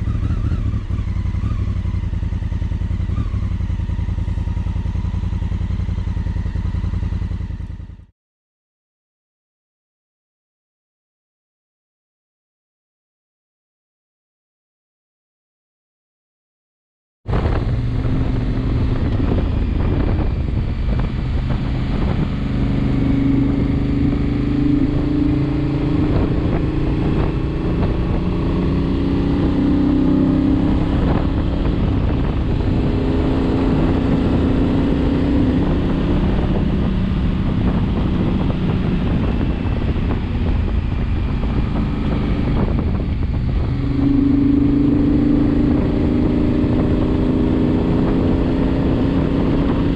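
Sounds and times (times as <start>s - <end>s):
motorcycle engine revving: 0.0s - 8.1s, 17.3s - 49.9s
steady rushing noise: 17.3s - 28.5s, 30.8s - 49.9s.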